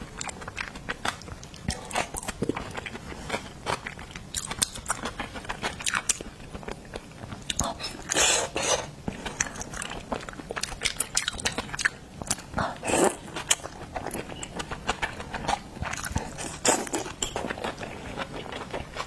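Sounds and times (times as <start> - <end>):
wet chewing and biting: 0.1 - 19.0.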